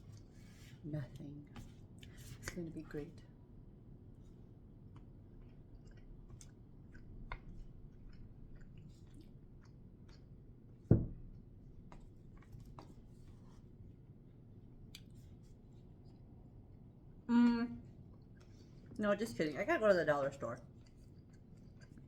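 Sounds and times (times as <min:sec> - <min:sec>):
chewing with wet mouth clicks: 0:04.8 - 0:10.4, 0:14.8 - 0:15.4, 0:20.6 - 0:22.0.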